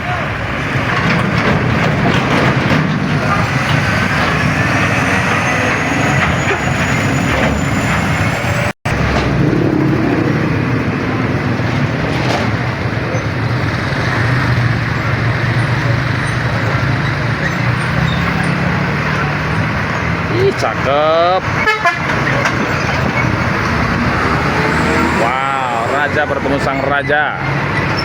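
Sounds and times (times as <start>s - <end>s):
road traffic engine rumble: 0.0s - 28.0s.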